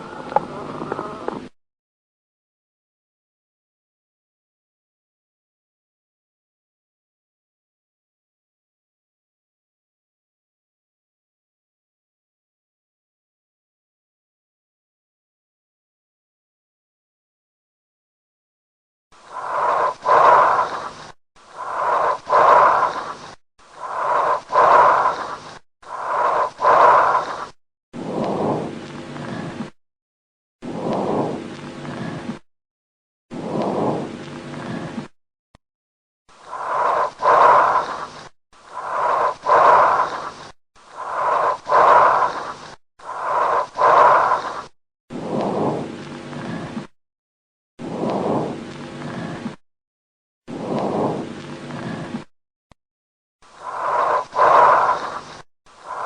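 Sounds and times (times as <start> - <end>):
lower breath: 19.3 - 28.6, 36.4 - 45.7, 53.5 - 56.0.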